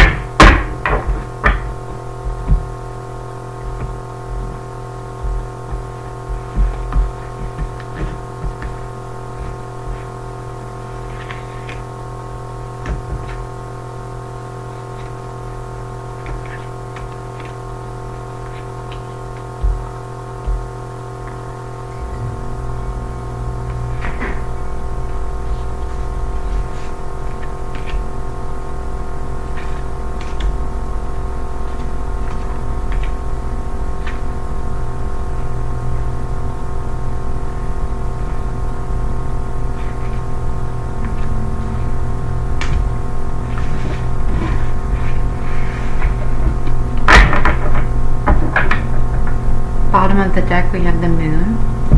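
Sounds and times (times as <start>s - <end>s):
ambient droning music: 0.8s - 51.9s
low pulsing layer: 19.5s - 51.9s.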